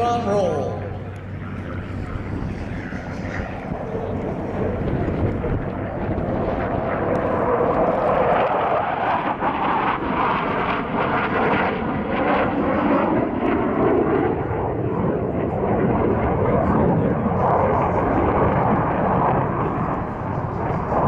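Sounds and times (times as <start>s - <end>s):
jet engine roar: 0.0s - 21.0s.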